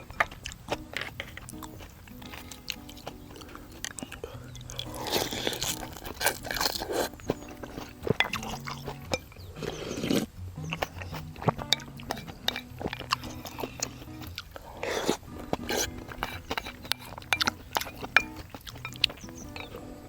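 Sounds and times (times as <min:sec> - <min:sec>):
light background music: 0:00.0 - 0:20.0
person chewing noodles: 0:00.0 - 0:20.0
person slurping noodles: 0:04.8 - 0:07.2, 0:13.3 - 0:17.2
utensils clicking on bowl: 0:10.8 - 0:19.9.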